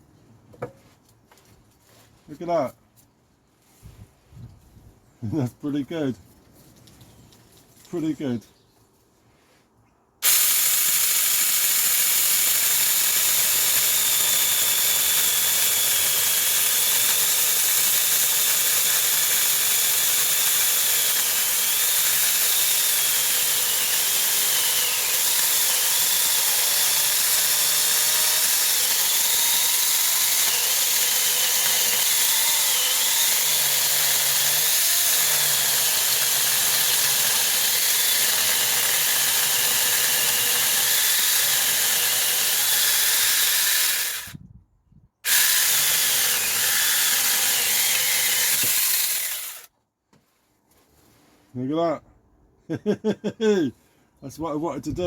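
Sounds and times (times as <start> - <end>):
chainsaw cutting wood: 10.2 - 44.4, 45.2 - 49.7.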